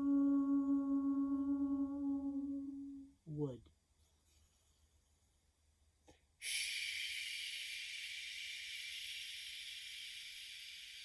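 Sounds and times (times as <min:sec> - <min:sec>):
person breathing out a hiss: 0:06.4 - 0:11.0.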